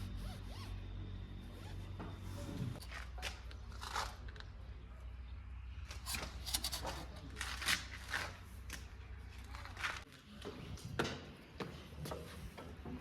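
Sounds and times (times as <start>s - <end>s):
diesel engine humming: 0.0s - 2.8s.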